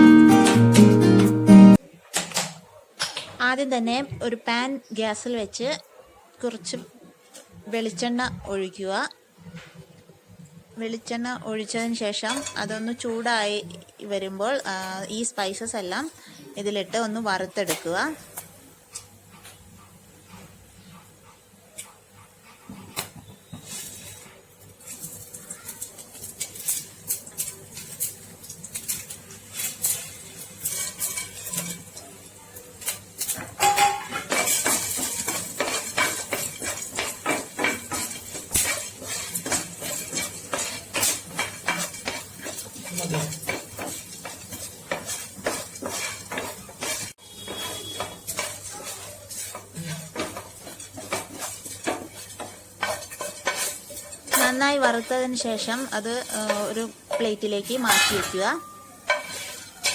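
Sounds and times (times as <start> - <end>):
utensil scraping and clinking on pan: 12.2 - 12.8, 23.5 - 59.9.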